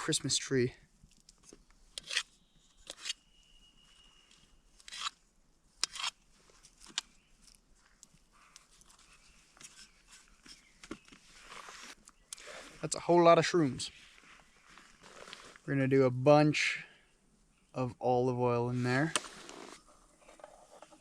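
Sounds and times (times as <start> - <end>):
soft rustling: 6.3 - 12.8, 14.0 - 15.7.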